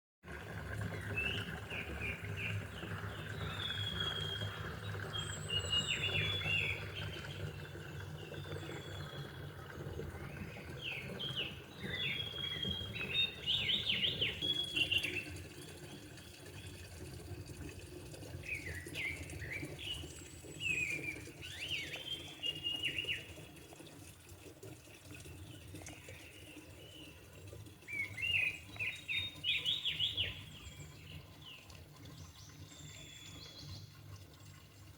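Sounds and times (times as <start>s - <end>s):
songbird chirping: 27.8s - 34.0s.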